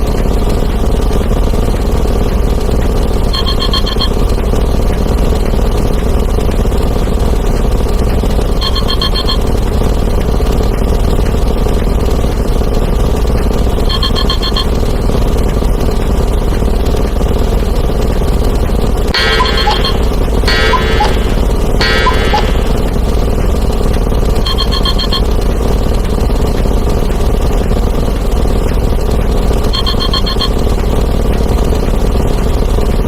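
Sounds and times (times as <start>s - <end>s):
electronic phone ring: 3.4s - 4.1s, 8.6s - 9.4s, 19.1s - 23.1s, 24.5s - 25.2s.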